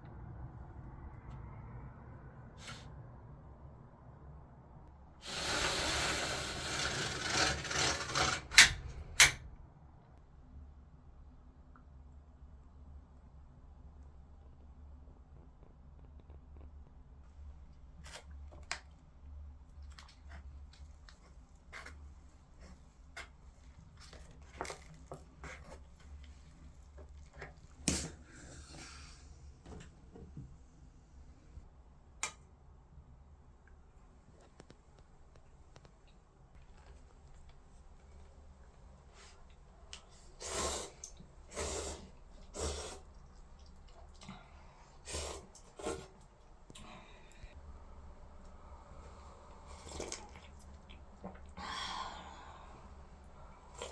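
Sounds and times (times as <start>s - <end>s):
rubbing scraping noise: 5.2s - 9.3s.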